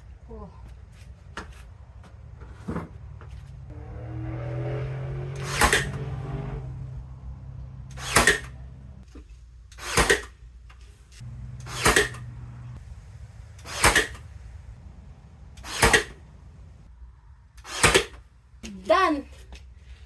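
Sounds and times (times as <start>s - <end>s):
low hum: 3.4s - 9.0s, 11.2s - 17.4s
nail gun firing: 7.9s - 8.6s, 9.7s - 10.3s, 11.6s - 12.3s, 13.6s - 14.2s, 15.6s - 16.2s, 17.6s - 18.2s.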